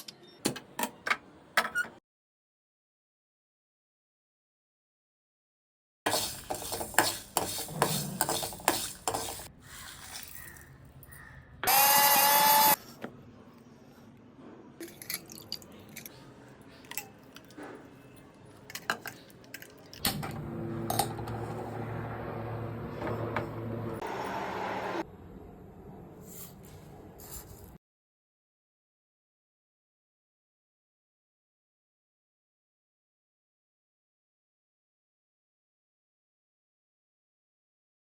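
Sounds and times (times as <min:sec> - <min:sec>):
metal utensils clinking: 0:06.1 - 0:10.7.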